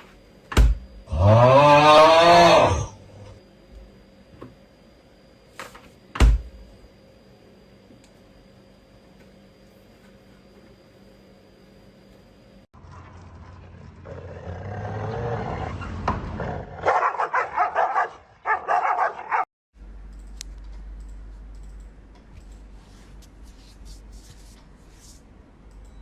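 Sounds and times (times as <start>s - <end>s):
pet growling: 1.1s - 3.4s, 13.3s - 16.9s.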